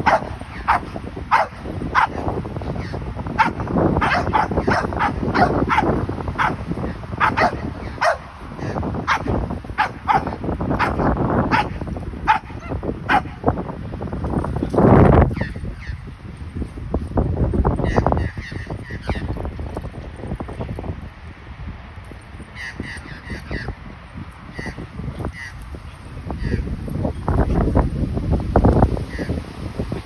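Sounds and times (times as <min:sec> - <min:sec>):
puppies yapping: 0:00.0 - 0:11.7.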